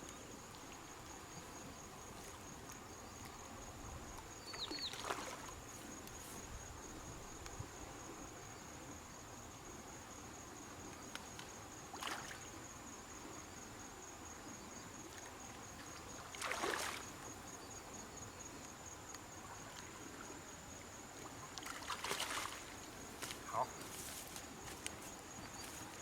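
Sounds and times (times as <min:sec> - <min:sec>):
insect trill: 0:00.0 - 0:26.0
splashy swishes: 0:21.6 - 0:22.7.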